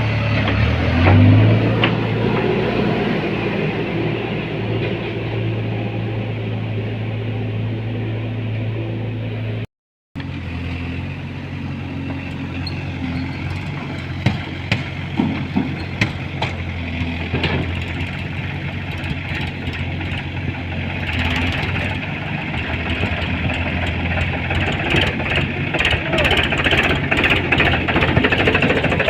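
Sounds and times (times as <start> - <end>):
diesel engine running: 0.0 - 29.0
sharp metallic knocks: 13.6 - 20.4.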